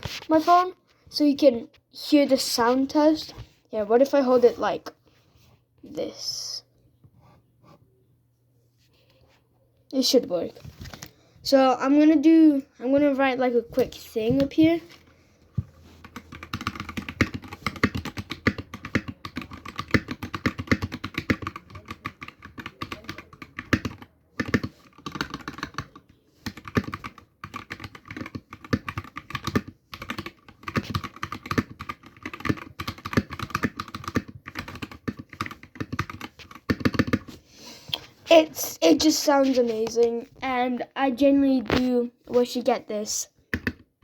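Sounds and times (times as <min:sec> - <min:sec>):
mechanical keyboard typing clacks: 0:16.0 - 0:37.3.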